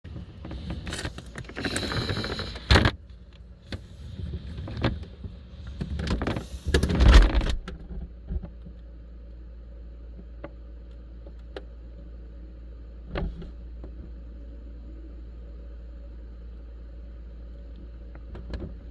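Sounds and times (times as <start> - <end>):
refrigerator humming: 0.0 - 8.5
freezer drawer sliding and rumbling: 0.1 - 3.1, 3.7 - 7.9.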